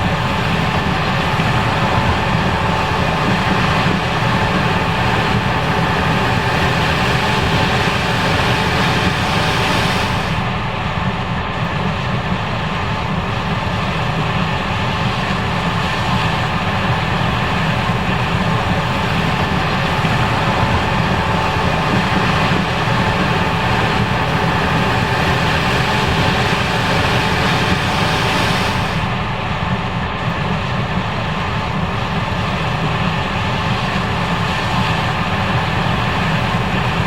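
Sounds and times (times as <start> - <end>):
combine harvester drone: 0.0 - 37.0.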